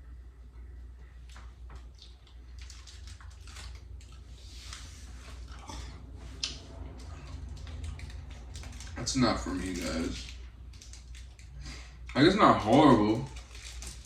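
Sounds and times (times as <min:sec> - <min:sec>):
low hum: 0:00.0 - 0:14.0
crunching clicks of eating: 0:01.3 - 0:04.3, 0:06.4 - 0:14.0
snack handling: 0:01.3 - 0:14.0.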